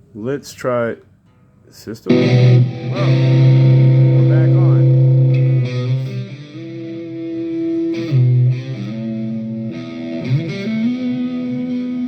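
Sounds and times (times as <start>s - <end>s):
electric guitar single notes: 2.1s - 12.0s.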